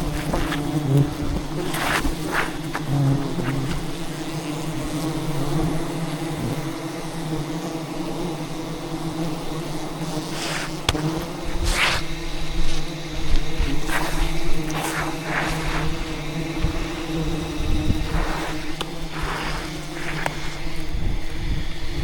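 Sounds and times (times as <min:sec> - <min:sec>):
bees buzzing: 0:00.0 - 0:22.0
rushes of noise: 0:10.3 - 0:22.0.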